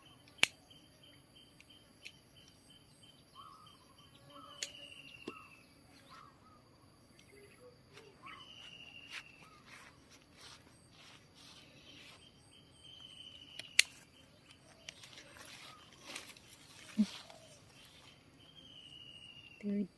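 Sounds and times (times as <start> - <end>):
bird chirps: 0.0 - 19.9
insect drone with trills: 0.0 - 19.9
sharp clicks: 0.3 - 0.6, 4.6 - 5.4, 13.3 - 15.2
bird whistling: 7.3 - 9.8.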